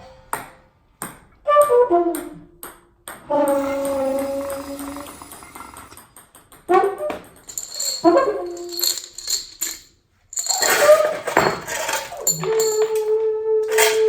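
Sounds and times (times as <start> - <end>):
sliding trombone notes: 3.3 - 5.2
metallic percussion clinks and jingles: 7.4 - 14.0.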